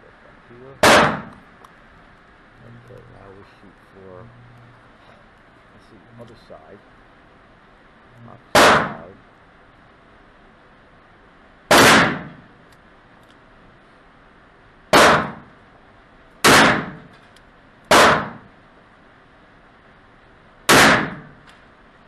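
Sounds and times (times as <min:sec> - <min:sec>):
gunshots: 0:00.8 - 0:01.4, 0:08.5 - 0:09.1, 0:11.7 - 0:12.5, 0:14.9 - 0:15.5, 0:16.4 - 0:17.1, 0:17.9 - 0:18.5, 0:20.7 - 0:21.5.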